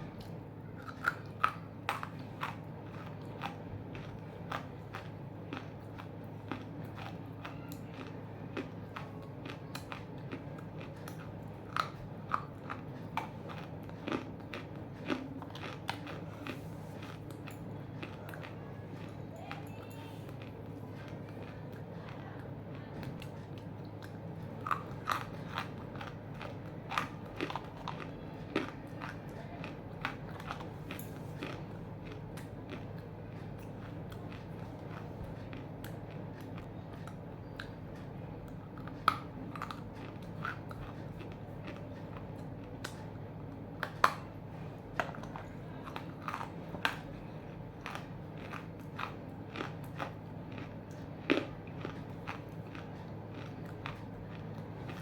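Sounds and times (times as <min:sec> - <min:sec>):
crunchy chewing: 0:00.0 - 0:55.0.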